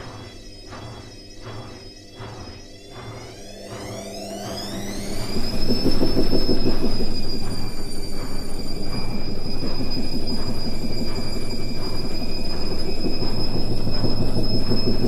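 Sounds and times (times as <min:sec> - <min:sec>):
washing machine drum rattling: 0:00.0 - 0:15.0
washing machine motor whine: 0:00.0 - 0:15.0.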